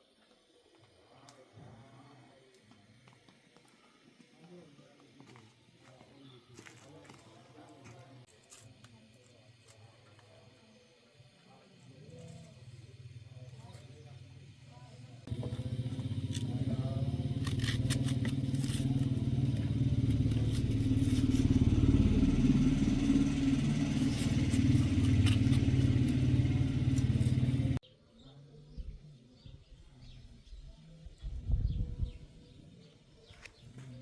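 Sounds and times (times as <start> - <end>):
faint outdoor sounds: 0.0 - 34.0
small engine droning: 11.8 - 27.8.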